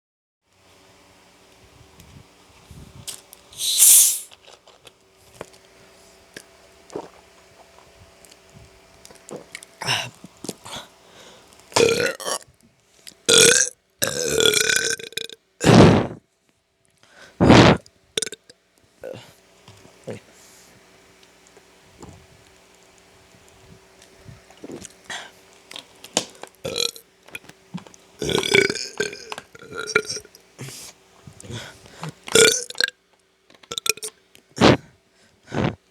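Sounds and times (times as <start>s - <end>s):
mouth clicks: 3.6s - 4.3s
person breathing: 3.6s - 4.3s, 10.7s - 11.5s, 17.0s - 17.4s, 30.6s - 32.2s
person burping: 13.3s - 16.2s, 17.4s - 18.4s, 28.2s - 29.2s.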